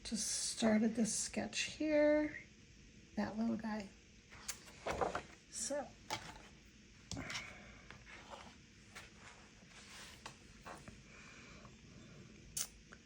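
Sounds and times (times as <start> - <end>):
faint paper rustles: 4.4 - 5.4, 8.0 - 11.0.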